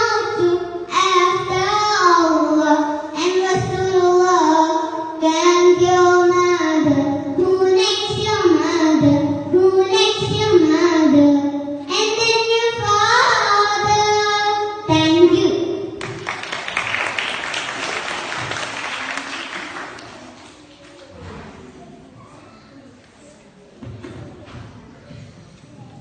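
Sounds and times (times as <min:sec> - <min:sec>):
child singing: 0:00.0 - 0:15.7.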